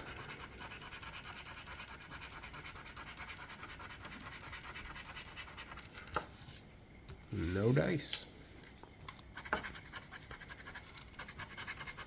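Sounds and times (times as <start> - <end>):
scratching lottery ticket: 0.0 - 6.2, 9.3 - 12.0.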